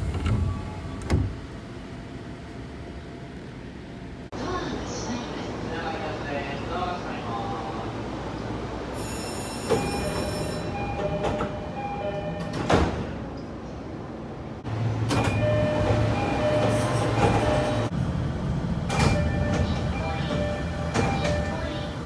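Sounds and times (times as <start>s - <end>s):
sliding doors knocking shut: 0.0s - 1.7s
train low hum: 0.0s - 22.0s.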